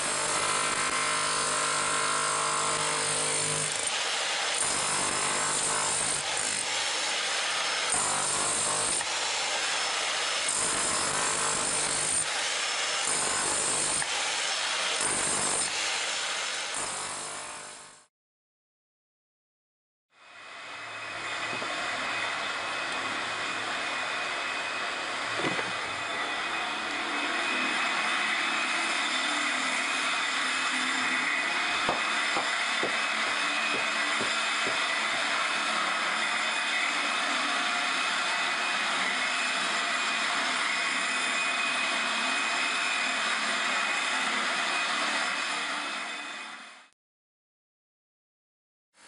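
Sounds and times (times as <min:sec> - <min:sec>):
small knocks: 0:25.4 - 0:25.8.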